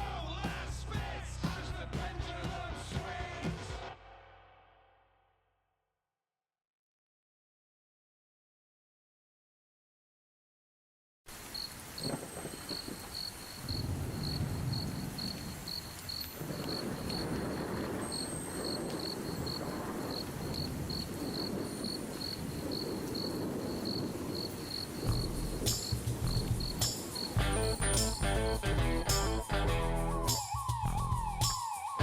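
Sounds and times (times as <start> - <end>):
music with a beat: 0.0 - 3.8, 25.1 - 32.0
cricket chirping: 11.4 - 32.0.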